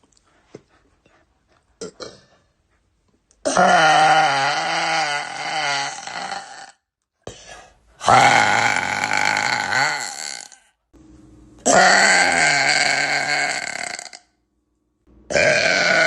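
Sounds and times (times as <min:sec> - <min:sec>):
woman burping loudly: 0:03.4 - 0:06.9, 0:08.0 - 0:10.7, 0:11.6 - 0:14.4, 0:15.3 - 0:16.0.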